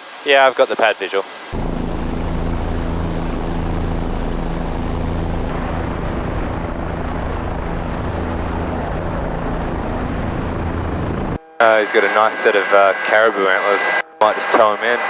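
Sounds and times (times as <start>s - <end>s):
helicopter rotor and engine: 1.6s - 11.4s.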